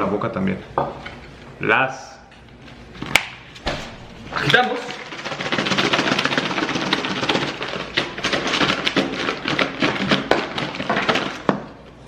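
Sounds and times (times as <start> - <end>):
chips shaken in a container: 4.4 - 11.5.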